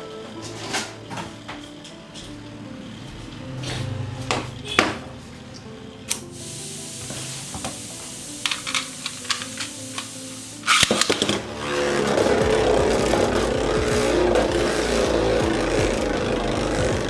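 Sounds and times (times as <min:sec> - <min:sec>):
background music: 0:00.0 - 0:17.0
plastic clatter: 0:08.4 - 0:10.1, 0:10.7 - 0:11.5
plastic toy parts clicking: 0:08.4 - 0:11.4.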